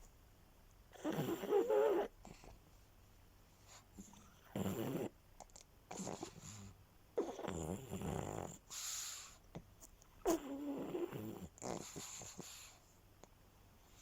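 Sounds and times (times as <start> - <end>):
dog snoring: 0.9 - 2.6, 3.7 - 9.4, 10.2 - 12.8.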